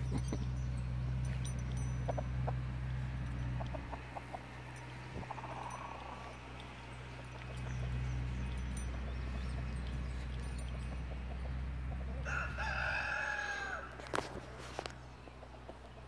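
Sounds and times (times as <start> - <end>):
steady low rumble: 0.0 - 12.6
rooster crowing: 12.1 - 14.2.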